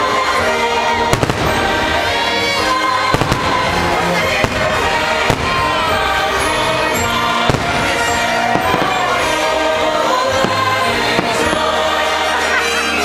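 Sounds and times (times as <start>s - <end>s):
music with singing over loudspeakers: 0.0s - 13.0s
firework bangs: 1.0s - 9.7s, 10.3s - 12.1s.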